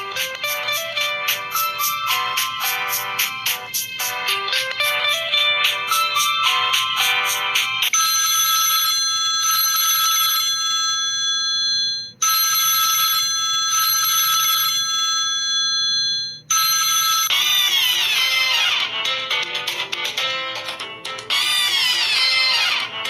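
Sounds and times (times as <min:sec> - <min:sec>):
ringtone with falling sweeping tones: 0:00.0 - 0:08.7, 0:15.5 - 0:19.5, 0:21.3 - 0:22.9
bell-like phone ringtone: 0:00.0 - 0:22.9.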